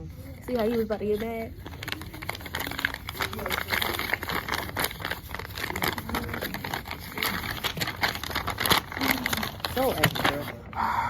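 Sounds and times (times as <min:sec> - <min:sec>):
paper rustling and crinkling: 0:00.0 - 0:10.8.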